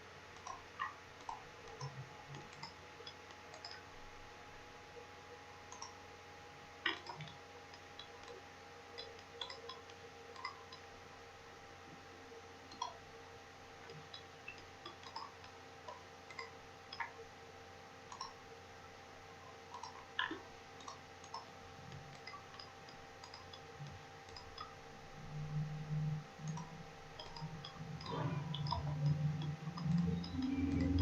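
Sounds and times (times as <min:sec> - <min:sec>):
faint electrical hum: 0:00.0 - 0:31.0
computer mouse clicking: 0:00.3 - 0:03.9, 0:05.6 - 0:06.0, 0:06.8 - 0:08.4, 0:09.0 - 0:10.9, 0:13.8 - 0:17.2, 0:18.1 - 0:18.4, 0:19.5 - 0:24.8, 0:26.4 - 0:31.0
loud low hum: 0:23.8 - 0:31.0.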